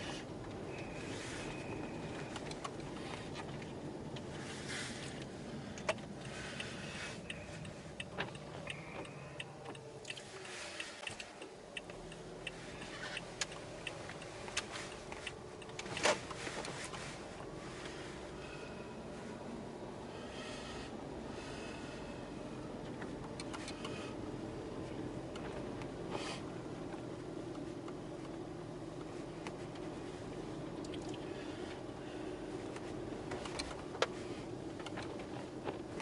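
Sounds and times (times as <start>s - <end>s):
low road rumble: 0.0s - 36.0s
irregular clicks and ticks: 2.2s - 4.3s, 5.2s - 17.0s, 22.8s - 24.3s, 32.6s - 36.0s.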